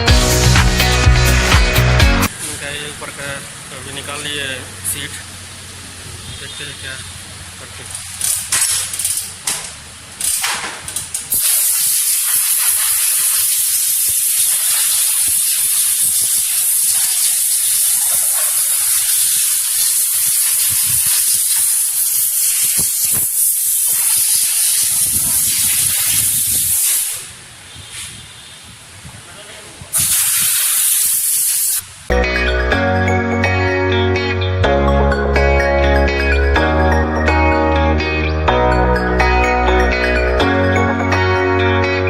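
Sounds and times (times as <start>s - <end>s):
high-pressure jet hissing: 11.2s - 28.2s, 29.9s - 32.1s.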